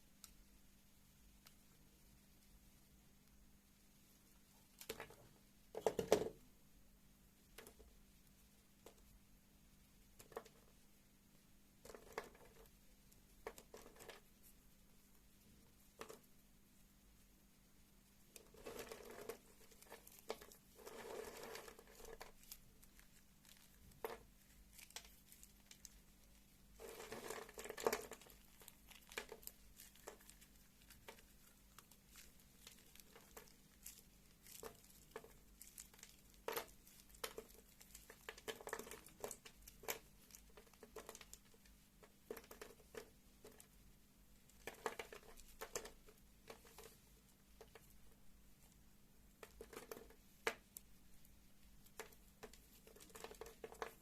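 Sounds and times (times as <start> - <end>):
knife carving soap: 18.4 - 43.8.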